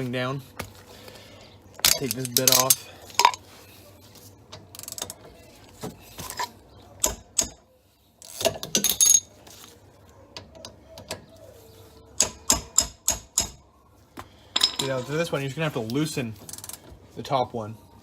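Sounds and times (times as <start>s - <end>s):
metal parts rattling: 1.8s - 3.4s, 8.2s - 9.4s
metal tools clicking and clinking: 1.8s - 3.4s, 8.2s - 9.3s, 14.5s - 15.2s.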